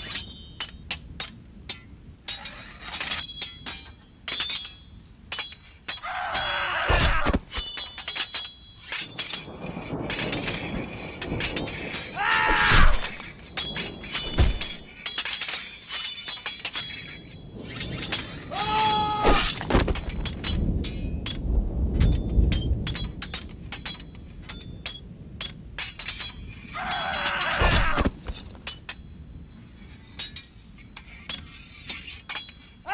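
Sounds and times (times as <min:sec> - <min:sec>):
glass shattering: 0:11.4 - 0:21.4.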